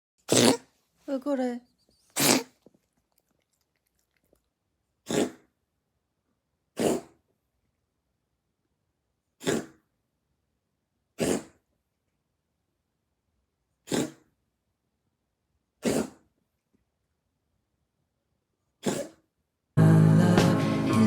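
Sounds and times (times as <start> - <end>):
cat coughing: 0.3 - 0.6, 2.2 - 2.6, 15.8 - 16.2.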